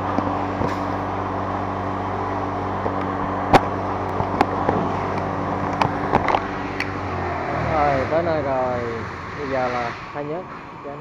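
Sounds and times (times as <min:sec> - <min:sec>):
motorcycle engine running steadily: 0:00.0 - 0:08.7
sharp clicks and knocks: 0:02.8 - 0:07.0.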